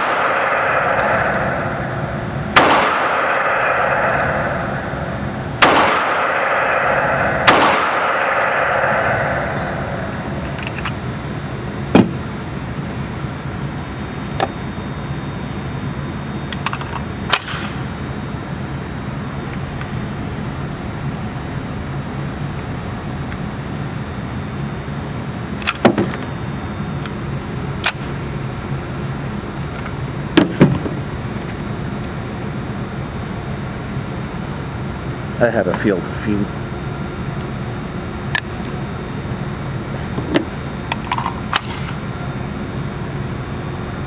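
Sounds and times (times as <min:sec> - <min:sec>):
pistol shots: 0:00.0 - 0:10.5
steady hum: 0:00.0 - 0:44.0.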